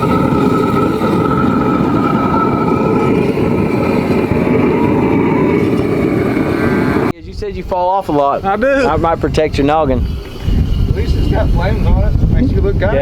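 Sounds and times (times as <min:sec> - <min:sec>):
faint steady whine: 0:00.0 - 0:07.1.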